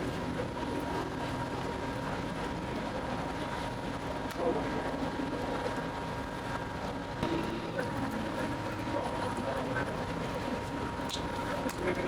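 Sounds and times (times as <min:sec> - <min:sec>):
machine hum: 0:07.2 - 0:09.1.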